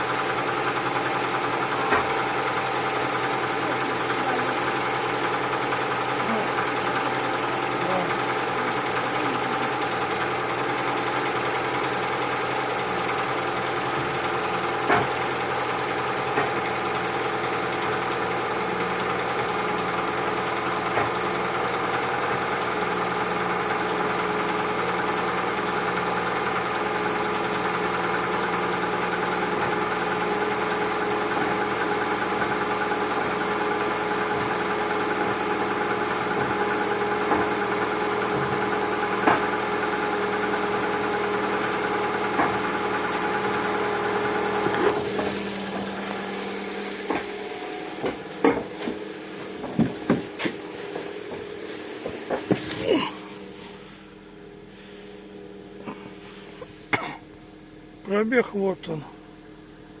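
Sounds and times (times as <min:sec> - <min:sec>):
engine idling with knocking: 0:00.0 - 1:00.0.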